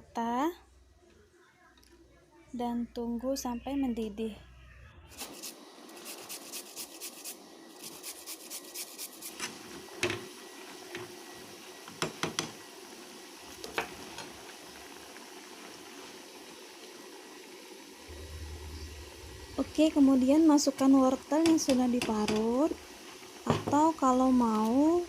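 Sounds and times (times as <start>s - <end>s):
faint steady hiss: 5.2s - 25.0s
spoon knocking on pan: 11.9s - 12.6s, 21.4s - 22.5s, 23.5s - 23.9s.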